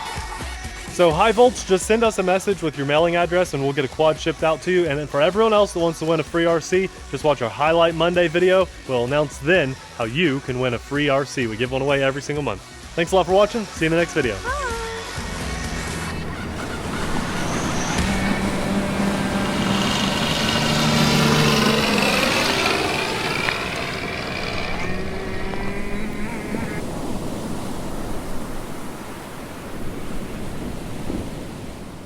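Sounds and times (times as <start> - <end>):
electric motors and propellers whining: 14.6 - 29.9
steady rushing noise: 15.1 - 32.0.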